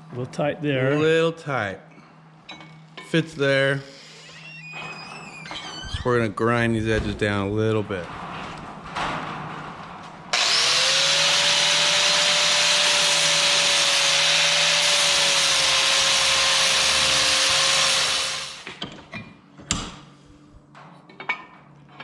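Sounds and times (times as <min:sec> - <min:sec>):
angle grinder grinding metal: 0:10.3 - 0:18.8.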